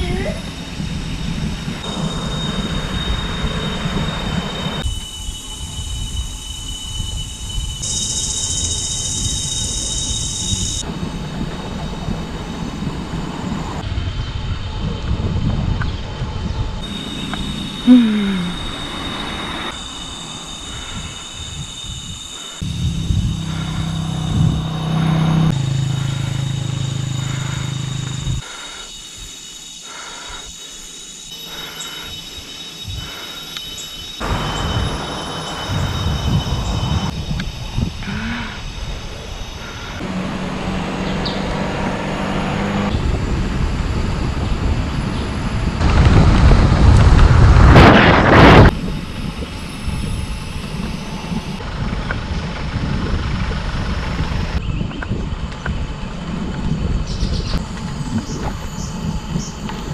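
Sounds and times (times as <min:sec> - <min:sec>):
loud low hum: 0:00.0 - 0:07.9, 0:10.4 - 0:19.8, 0:22.6 - 0:28.5, 0:40.0 - 0:54.6
high-pitched insect tones: 0:00.0 - 0:11.0, 0:16.8 - 0:40.1, 0:57.1 - 0:59.9
cicadas shrill buzz: 0:00.0 - 0:14.6, 0:15.9 - 0:59.9
low rumble: 0:20.8 - 0:28.4, 0:34.2 - 0:42.1.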